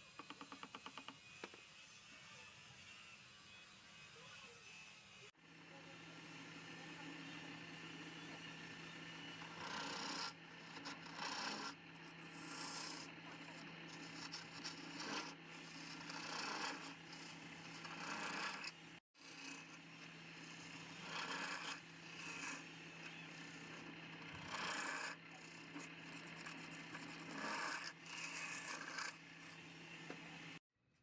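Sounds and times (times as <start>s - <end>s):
wood lathe humming: 5.8s - 30.6s
rasping rubbing on spinning wood: 7.4s - 30.6s.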